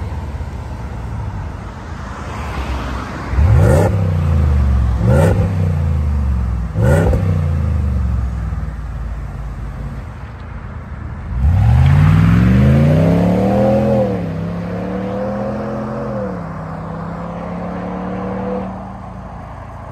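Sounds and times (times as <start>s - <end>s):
pickup engine revving: 3.4s - 8.6s, 11.3s - 18.7s.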